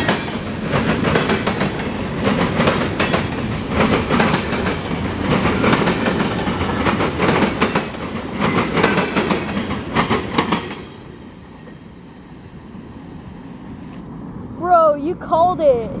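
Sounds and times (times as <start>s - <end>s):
wheels clicking over rail joints: 0.0s - 11.0s
freight train cars rolling: 0.0s - 12.4s.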